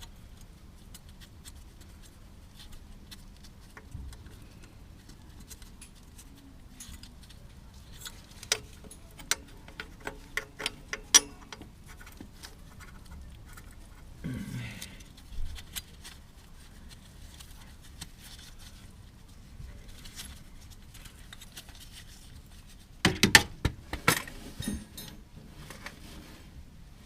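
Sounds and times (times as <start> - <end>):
light clicks and taps on metal: 3.7 - 14.0
sharp metal knocks and clinks: 24.6 - 25.2.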